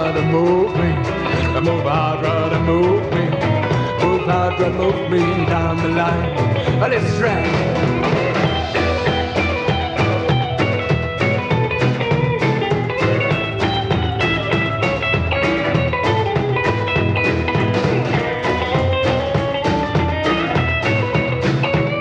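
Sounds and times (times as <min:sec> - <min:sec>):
bass guitar: 0:00.0 - 0:22.0
drum kit beat: 0:00.0 - 0:22.0
lead guitar solo: 0:00.0 - 0:22.0.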